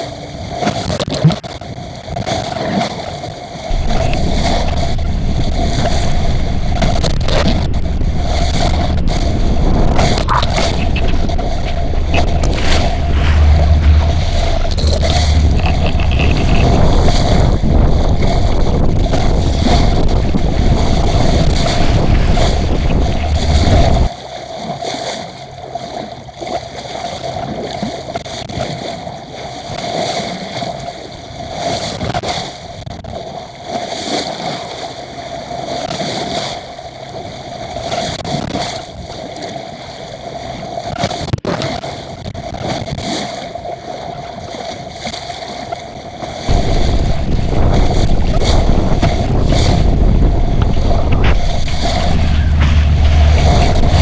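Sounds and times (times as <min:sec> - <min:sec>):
water rushing along hull: 0:00.0 - 0:54.0
water sloshing and splashing: 0:00.9 - 0:27.8, 0:38.4 - 0:54.0
wind gusts buffeting microphone: 0:03.6 - 0:24.1, 0:46.5 - 0:54.0
steady hum: 0:03.7 - 0:24.1, 0:46.5 - 0:54.0.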